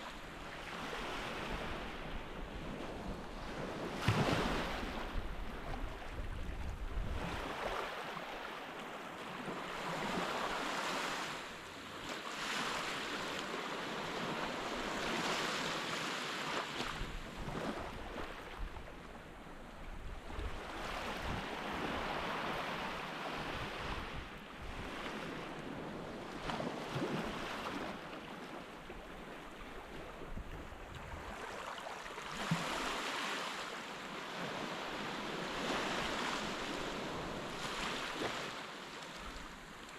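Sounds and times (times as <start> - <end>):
wind buffeting microphone: 1.5 - 7.8.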